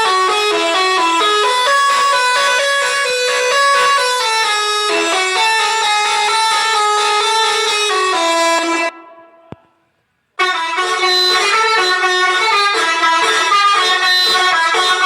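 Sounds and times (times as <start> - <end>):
musical air horn melody: 0.0 - 9.6, 10.4 - 15.0.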